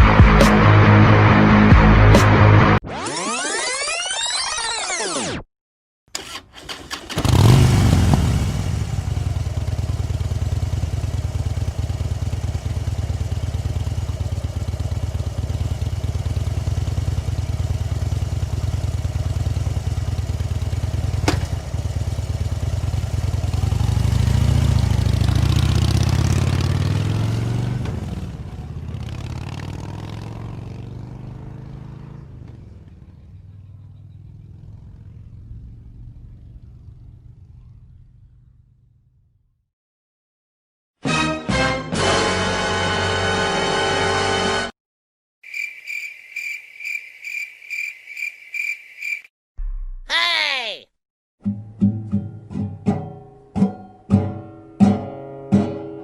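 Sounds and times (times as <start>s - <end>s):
vehicle engine running and revving: 7.2s - 38.6s.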